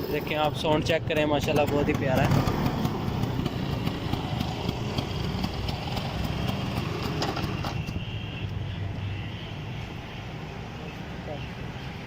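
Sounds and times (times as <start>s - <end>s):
scooter engine running: 0.0s - 8.0s.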